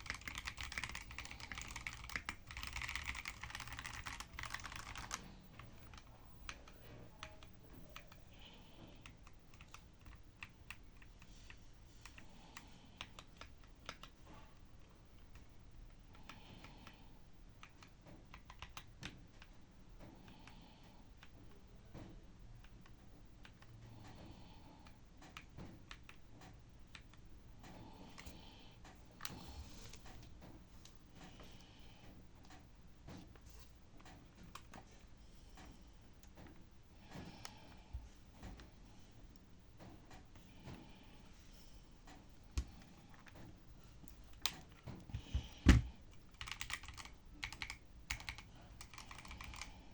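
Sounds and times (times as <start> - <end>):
mechanical keyboard typing: 0.0 - 8.2, 9.0 - 11.2, 13.0 - 14.2, 17.6 - 19.2, 45.7 - 49.8.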